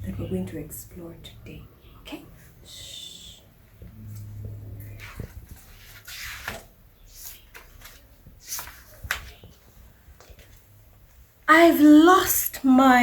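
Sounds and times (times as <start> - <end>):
paper pages rustling: 4.2 - 10.8.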